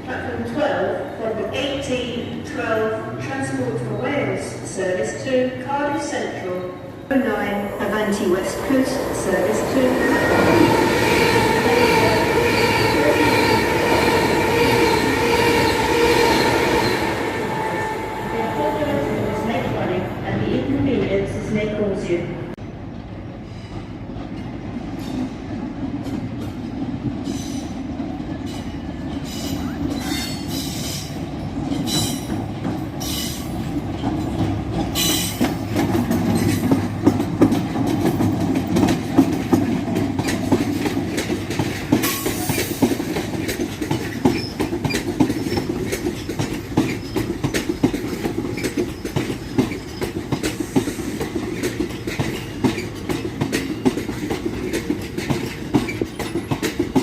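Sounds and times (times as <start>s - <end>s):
low train rumble: 0.0s - 57.0s
train wheels clattering over rails: 7.8s - 17.9s, 23.4s - 57.0s.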